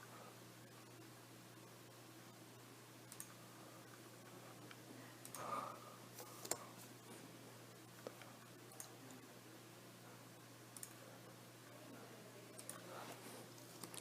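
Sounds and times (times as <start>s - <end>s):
low steady hum: 0.0s - 14.0s
faint clicks: 3.1s - 4.0s, 10.8s - 11.0s.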